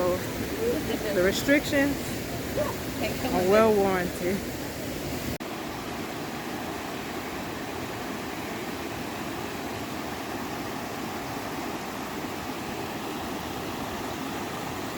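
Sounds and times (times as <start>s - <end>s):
flowing water rushing: 0.0s - 14.9s.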